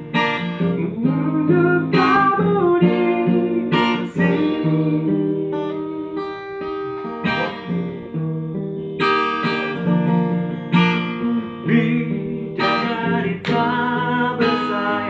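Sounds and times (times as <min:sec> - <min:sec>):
acoustic guitar strumming: 0:00.0 - 0:15.0
person singing: 0:00.4 - 0:07.9, 0:10.8 - 0:15.0.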